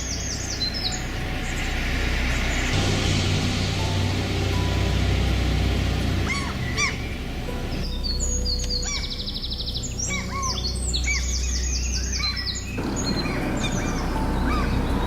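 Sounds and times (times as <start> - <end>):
steady low rumble: 0.0 - 15.0
birds chirping and calling: 6.0 - 15.0.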